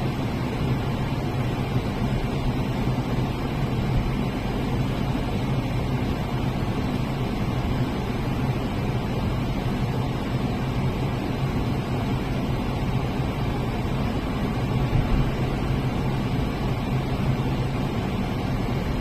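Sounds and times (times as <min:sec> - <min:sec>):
low mechanical drone: 0:00.0 - 0:19.0.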